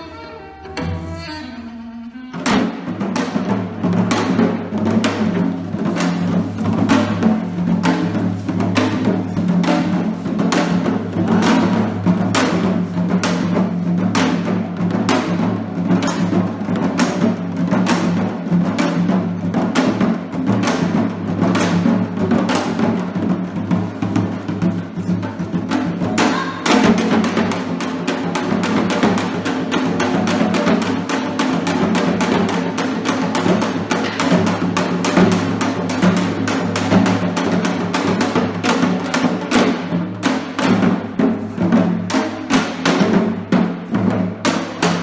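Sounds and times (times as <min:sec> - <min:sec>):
traditional music: 0:00.0 - 0:04.9
steady drum strokes: 0:00.0 - 0:45.0.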